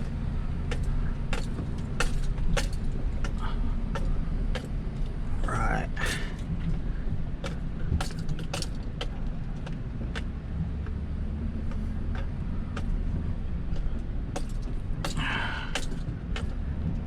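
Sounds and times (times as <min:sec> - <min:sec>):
clicks knocks and rattles: 0:00.0 - 0:05.6, 0:06.3 - 0:11.0, 0:11.6 - 0:17.0
vehicle engine running: 0:00.0 - 0:17.0.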